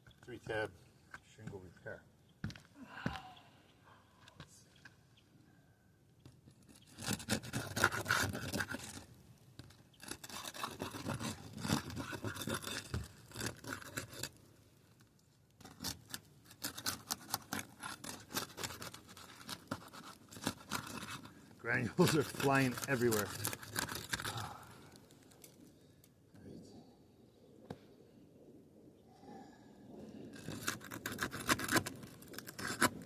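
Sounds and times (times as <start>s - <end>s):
shingles being scraped and pried up: 6.2s - 14.5s, 15.6s - 24.3s, 30.3s - 33.0s.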